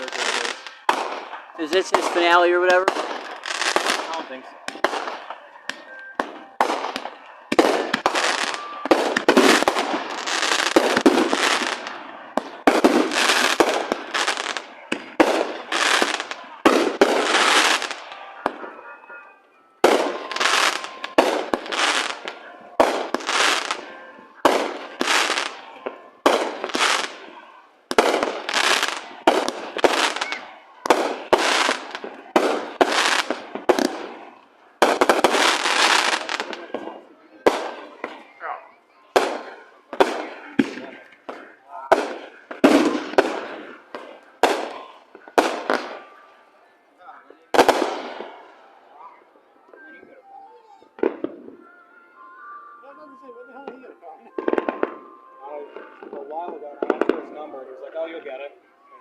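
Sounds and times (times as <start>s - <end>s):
firework explosions: 0.0s - 18.8s, 19.8s - 46.3s, 47.4s - 49.2s.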